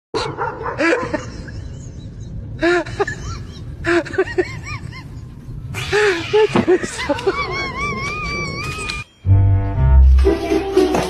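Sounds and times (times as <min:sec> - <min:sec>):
steady low rumble: 0:01.0 - 0:08.1.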